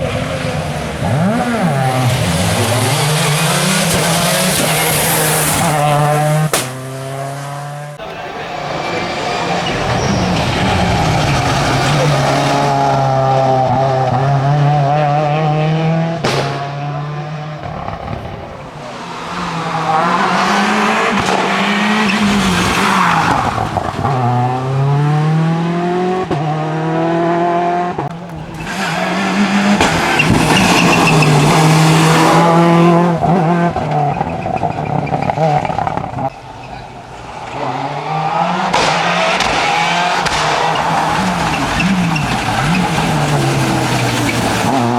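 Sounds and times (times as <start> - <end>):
rally car engine revving: 0.0 - 44.9
tyre noise: 0.0 - 44.9
sharp crack: 1.3 - 8.5, 16.2 - 18.6, 28.1 - 32.9, 38.7 - 44.9.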